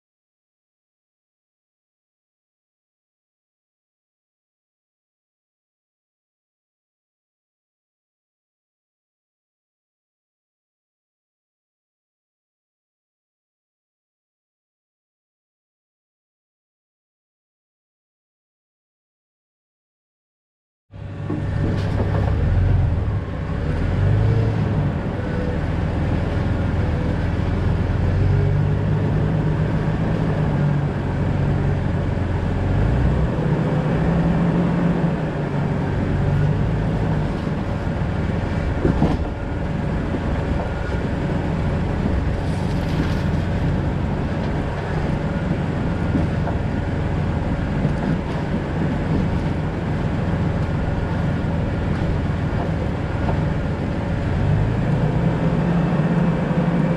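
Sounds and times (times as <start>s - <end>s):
car engine droning: 20.9s - 56.9s
road noise: 20.9s - 56.9s.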